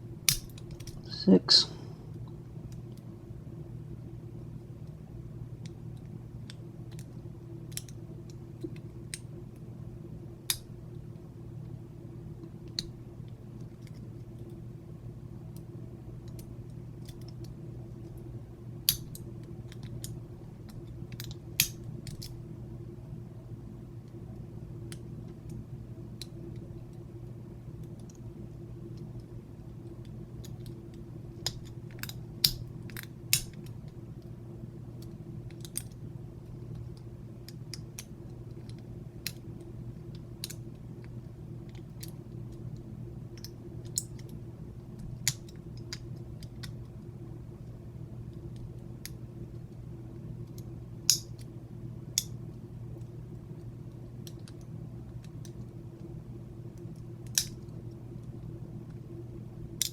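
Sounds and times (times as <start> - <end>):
steady low hum: 0.0 - 59.9
lock pick metallic clicks: 50.5 - 51.5, 57.2 - 57.7.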